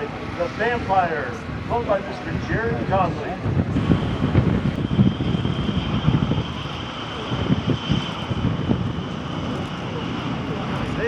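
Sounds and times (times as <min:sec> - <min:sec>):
jet engine whine and rumble: 0:00.0 - 0:11.0
wind on microphone: 0:00.0 - 0:11.0.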